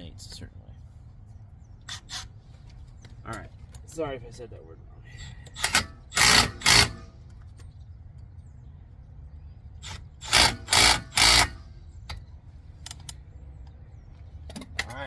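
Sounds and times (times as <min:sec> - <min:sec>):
impact wrench bursts: 0:01.9 - 0:02.4, 0:05.2 - 0:07.2, 0:09.8 - 0:11.7.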